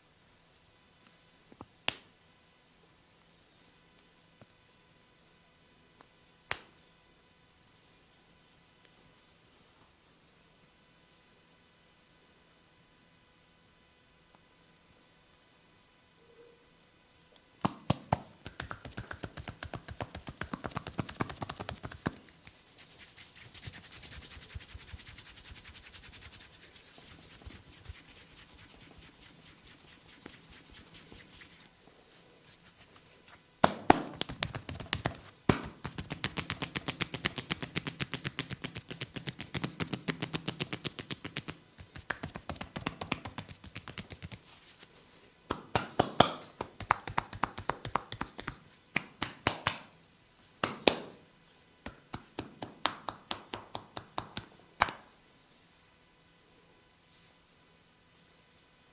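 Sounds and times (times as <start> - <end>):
hands tapping on head: 17.6 - 22.6, 33.6 - 44.4, 45.5 - 49.9, 50.6 - 51.2, 51.8 - 55.1
fingertips scratching through hair: 18.4 - 33.4, 34.1 - 45.1.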